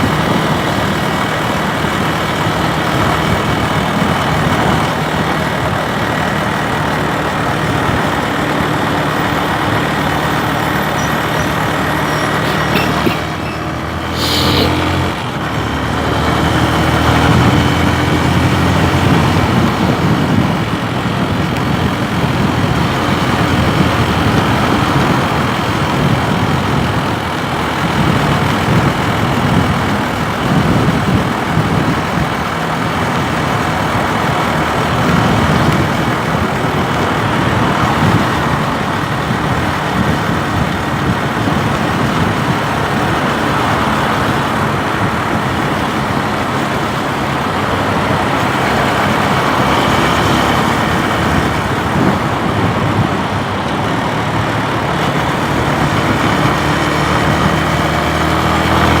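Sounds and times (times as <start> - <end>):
motorcycle engine running: 0.0 - 59.0
loud rushing noise: 9.0 - 20.4.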